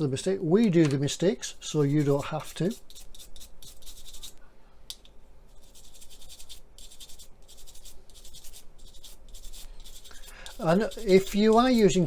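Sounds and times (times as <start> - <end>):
tool scratching plastic: 5.6 - 12.0.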